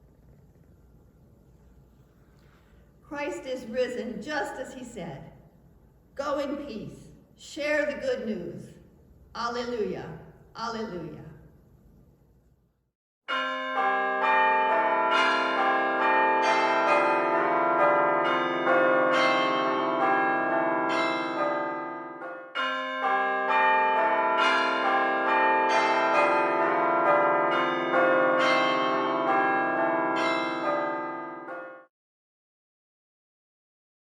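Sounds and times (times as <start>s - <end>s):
bells ringing: 13.3s - 31.9s.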